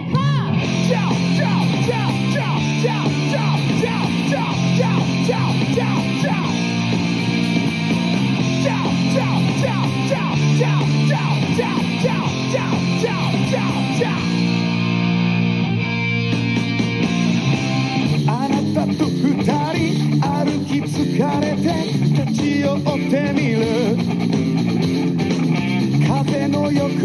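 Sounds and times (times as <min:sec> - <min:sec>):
band music with steady bass: 0:00.0 - 0:27.0.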